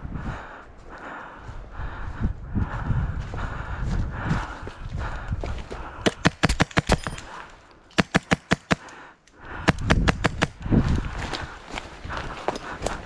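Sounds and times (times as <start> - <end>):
footsteps and movement: 0.3 - 13.0
airsoft gun firing: 6.1 - 7.4, 8.0 - 8.9.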